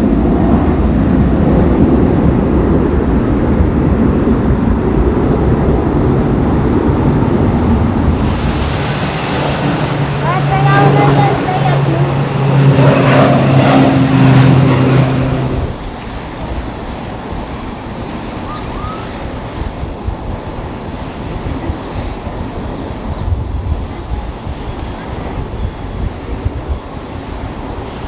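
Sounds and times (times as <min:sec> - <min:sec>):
engine hum: 0:00.1 - 0:16.0
low uneven rumbling: 0:05.5 - 0:15.8.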